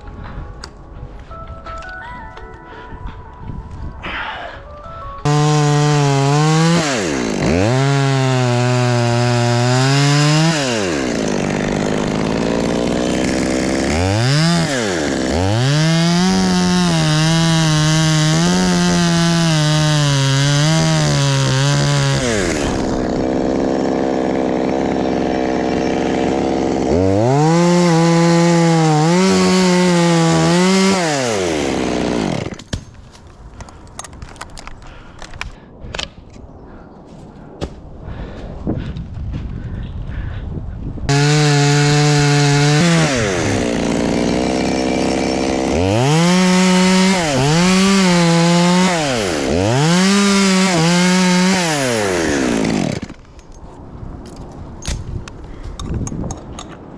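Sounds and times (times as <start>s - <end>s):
chainsaw revving: 5.2s - 32.6s, 41.1s - 53.2s.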